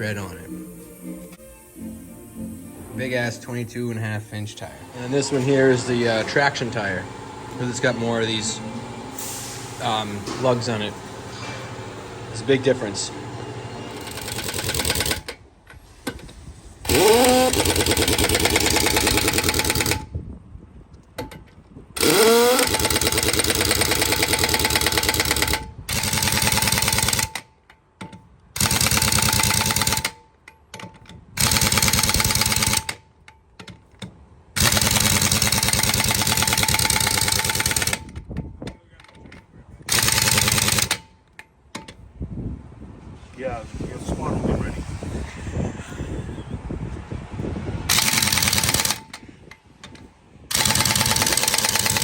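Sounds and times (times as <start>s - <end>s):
pneumatic impact wrench hammering: 5.1s - 20.2s, 21.2s - 39.2s, 39.8s - 42.1s, 47.9s - 52.0s.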